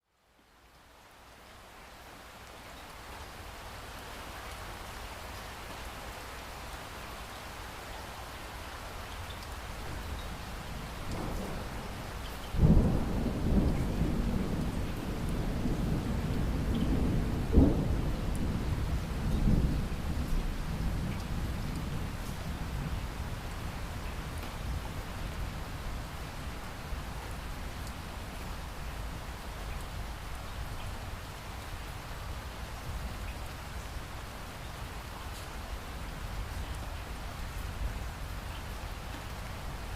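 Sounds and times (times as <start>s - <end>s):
heavy rain falling: 0.6s - 39.9s
raindrop ticks: 9.1s - 10.4s, 11.0s - 15.5s, 16.3s - 18.5s, 19.2s - 22.5s, 24.3s - 24.7s, 27.2s - 28.5s, 36.5s - 37.8s
thunder rumbling: 12.6s - 22.9s.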